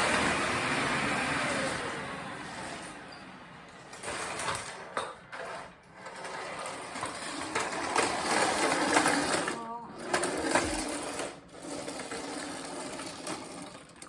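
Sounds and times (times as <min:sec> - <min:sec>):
vacuum cleaner running: 0:00.0 - 0:14.0.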